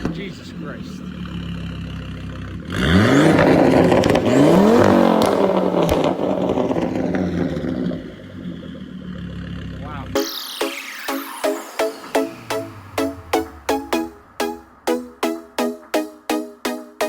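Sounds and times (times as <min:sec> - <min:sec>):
car engine idling and revving: 0:00.0 - 0:10.2.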